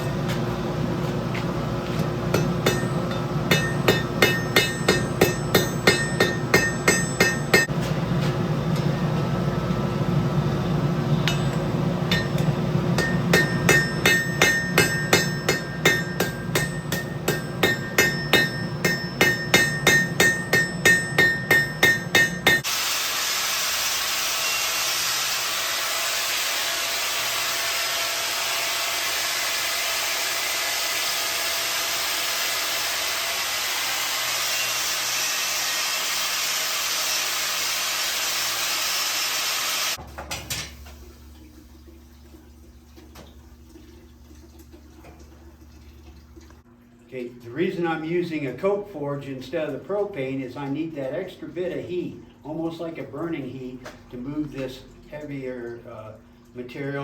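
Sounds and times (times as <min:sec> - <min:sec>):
hammer striking steel on anvil: 0:01.9 - 0:07.8, 0:11.2 - 0:22.7.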